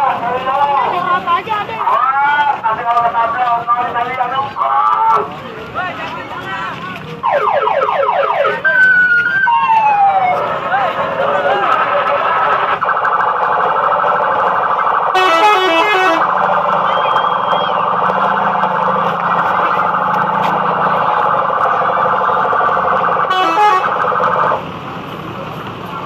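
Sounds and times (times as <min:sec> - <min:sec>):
pulsing multi-tone horn chord: 0:15.1 - 0:16.4, 0:23.2 - 0:24.3
stepping horn notes: 0:15.1 - 0:20.9, 0:23.2 - 0:24.5.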